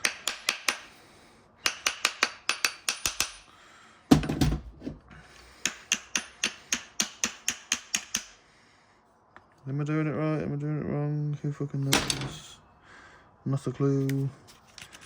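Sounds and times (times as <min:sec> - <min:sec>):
hammer tapping on metal: 0:00.0 - 0:00.9, 0:01.6 - 0:03.4, 0:05.6 - 0:08.3.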